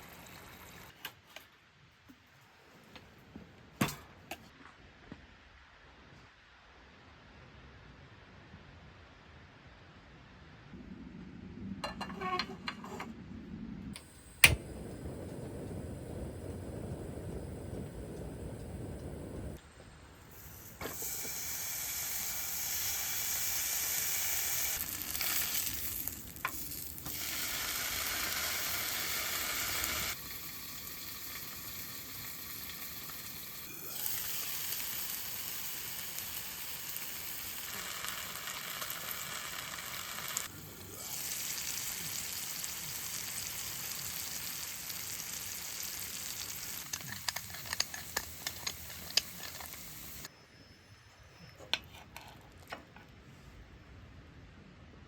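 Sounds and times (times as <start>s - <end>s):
food sizzling in a pan: 20.4s - 50.3s.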